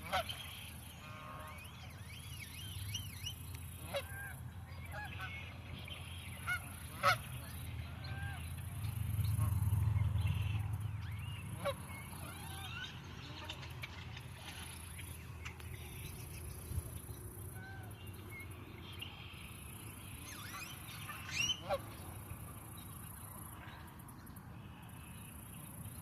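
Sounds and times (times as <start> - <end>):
birds chirping and whistling: 19.6 - 21.8.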